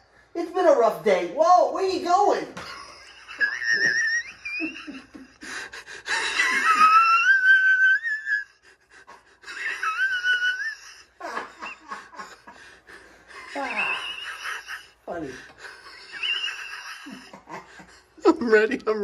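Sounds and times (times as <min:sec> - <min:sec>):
high-pitched wheezing laughter: 0:03.2 - 0:18.2.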